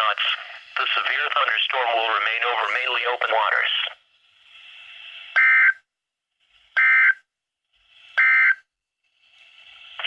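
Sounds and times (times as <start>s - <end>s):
faint radio hiss: 0.0s - 5.6s.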